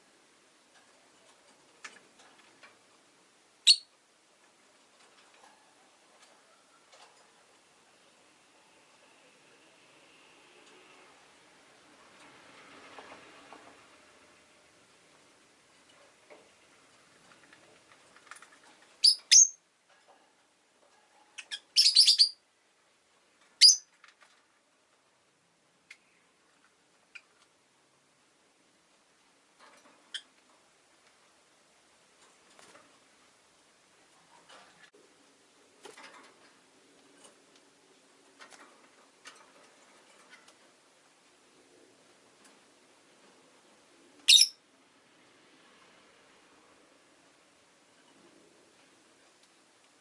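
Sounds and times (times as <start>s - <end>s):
bird chirping: 3.6s - 3.9s, 19.0s - 19.6s, 21.4s - 22.4s, 23.6s - 23.9s, 44.2s - 44.6s
faint clicks and ticks: 22.7s - 27.6s.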